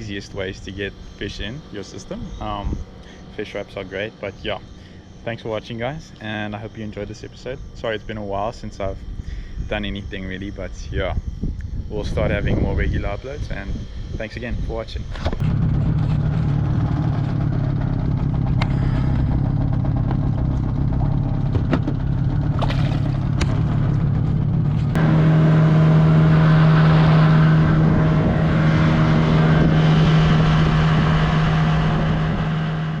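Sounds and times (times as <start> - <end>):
engine humming: 0.0 - 33.0.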